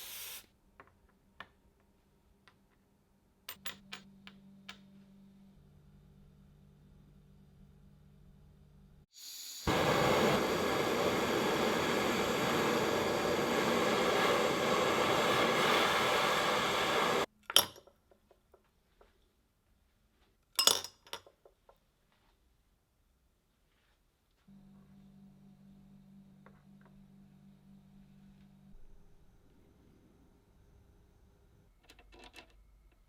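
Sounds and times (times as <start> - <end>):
hiss of pressurised spray: 0.0 - 0.5, 9.1 - 17.3.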